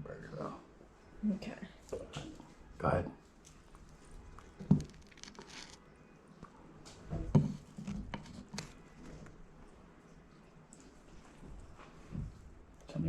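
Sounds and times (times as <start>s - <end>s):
person chewing food: 3.4s - 5.8s.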